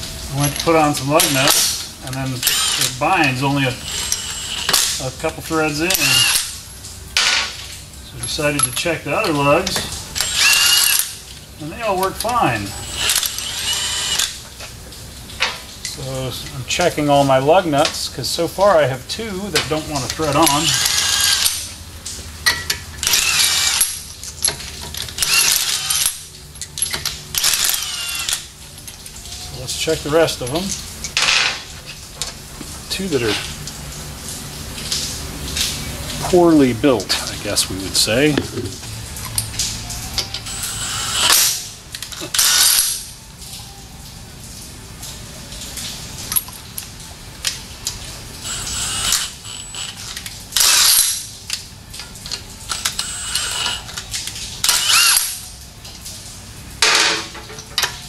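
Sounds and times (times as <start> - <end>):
metal lug nuts clinking: 22.4 - 29.0.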